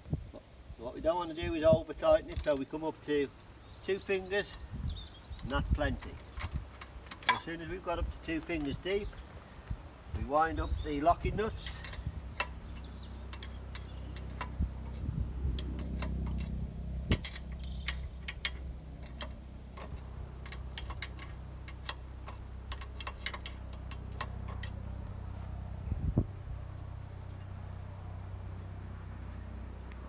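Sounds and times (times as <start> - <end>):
steady low hum: 0.0 - 30.0
ratchet clicking: 2.3 - 2.6.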